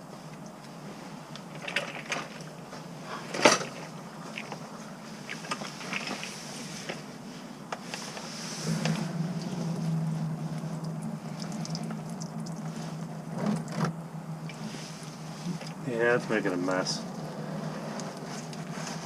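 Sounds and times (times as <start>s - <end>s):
steady hiss: 6.3s - 19.0s.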